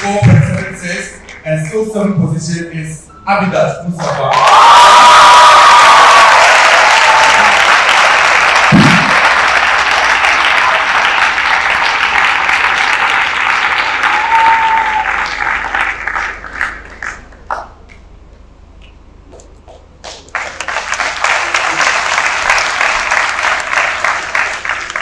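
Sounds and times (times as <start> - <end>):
audience applauding: 4.1 - 17.8, 20.0 - 25.0.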